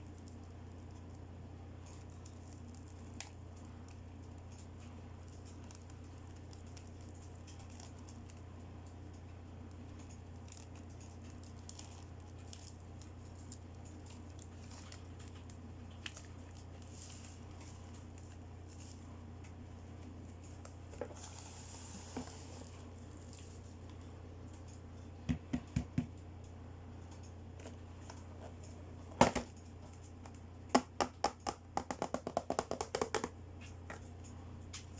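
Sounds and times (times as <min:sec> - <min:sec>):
steady low hum: 0:00.0 - 0:34.9
plastic toy clicks and taps: 0:30.8 - 0:33.3.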